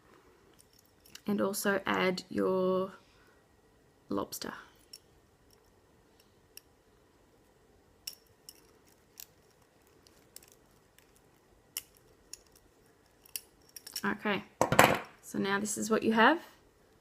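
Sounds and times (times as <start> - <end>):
small metal clicks: 0.5 - 1.3, 8.0 - 14.1.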